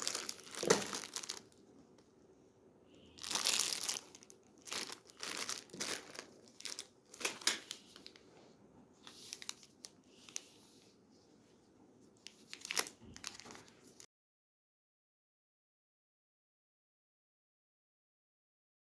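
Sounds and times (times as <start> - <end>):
candy wrappers crinkling: 0.0 - 2.1, 3.2 - 8.2, 9.0 - 10.6, 12.2 - 14.1.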